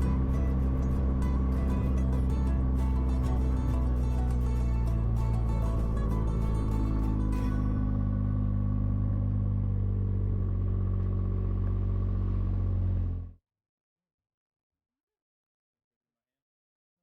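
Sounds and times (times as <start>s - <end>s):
vehicle engine running: 0.0s - 13.4s.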